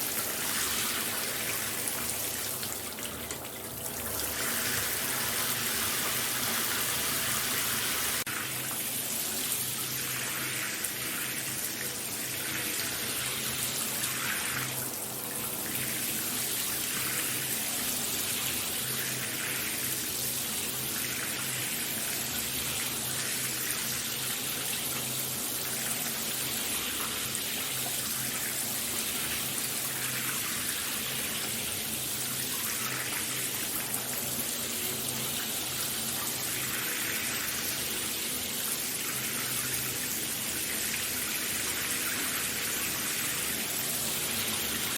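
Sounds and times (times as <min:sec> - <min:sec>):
shower water spraying: 0:00.0 - 0:03.0, 0:04.0 - 0:08.3.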